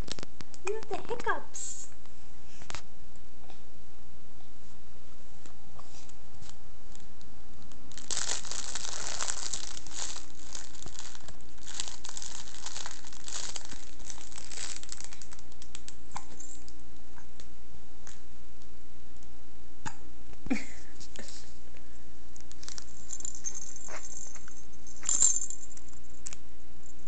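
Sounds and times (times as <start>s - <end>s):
crinkling rustling noise: 0.0s - 1.2s, 5.8s - 16.8s, 22.4s - 24.2s.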